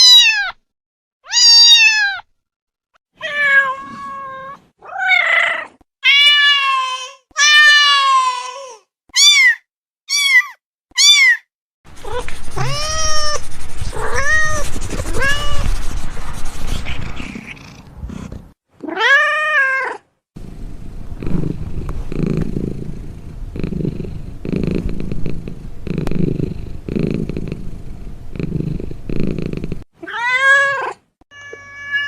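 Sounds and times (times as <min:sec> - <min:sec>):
cats meowing: 0:01.3 - 0:02.2, 0:03.2 - 0:08.6, 0:12.0 - 0:15.8, 0:18.8 - 0:20.0, 0:30.0 - 0:32.0.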